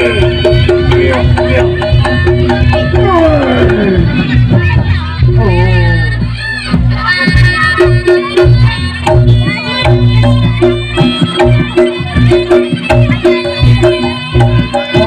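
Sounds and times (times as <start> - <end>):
reedy wind instrument melody: 0.0 - 4.6
hand drums: 0.0 - 15.0.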